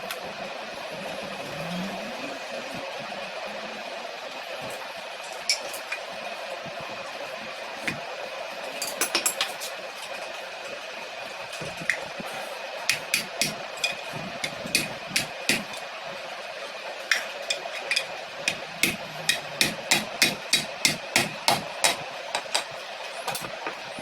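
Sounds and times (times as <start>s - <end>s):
hammer tapping on metal: 12.9s - 15.8s, 17.1s - 23.8s.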